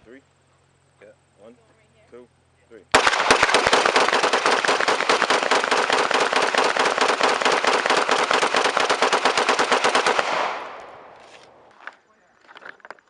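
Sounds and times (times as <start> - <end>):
rapid gunfire: 3.0 - 10.9.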